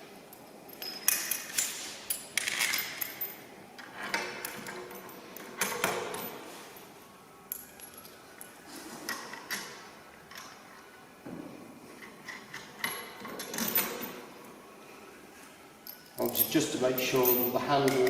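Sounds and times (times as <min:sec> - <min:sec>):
metal parts clanking: 0:00.7 - 0:06.4.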